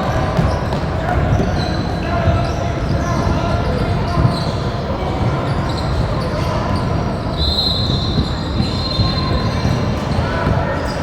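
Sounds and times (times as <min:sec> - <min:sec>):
gym hall noise: 0:00.0 - 0:11.0
basketball bouncing on court: 0:00.1 - 0:04.5
referee whistle blast: 0:07.3 - 0:09.2.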